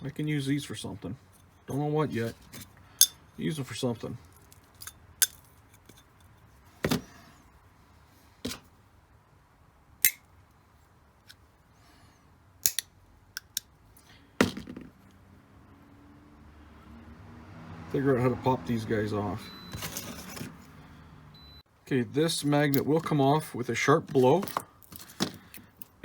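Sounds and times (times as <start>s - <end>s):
small metal parts clinking: 3.0s - 3.3s, 4.2s - 6.4s, 24.2s - 26.0s.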